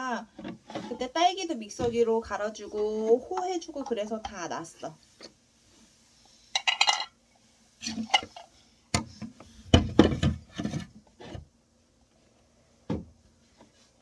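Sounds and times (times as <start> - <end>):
toy cookware clattering: 6.6 - 7.2.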